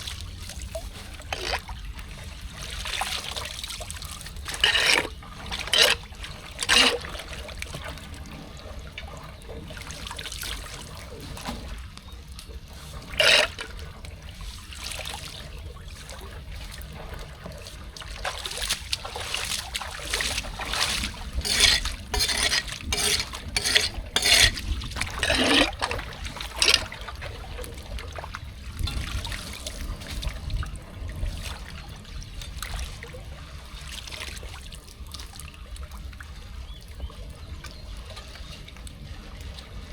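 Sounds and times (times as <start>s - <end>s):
water flowing into storm drain: 0.0s - 30.9s
sharp water splashes: 18.2s - 27.1s.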